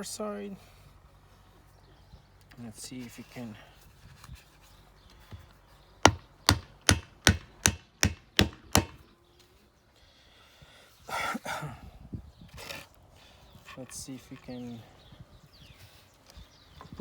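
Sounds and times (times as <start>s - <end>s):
scraping rustle: 2.5s - 5.9s.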